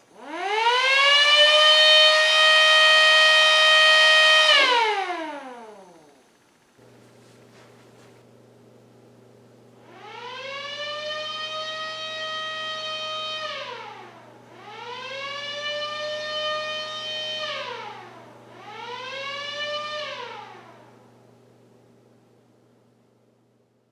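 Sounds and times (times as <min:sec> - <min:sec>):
siren wailing: 0:00.2 - 0:06.1, 0:09.8 - 0:21.1.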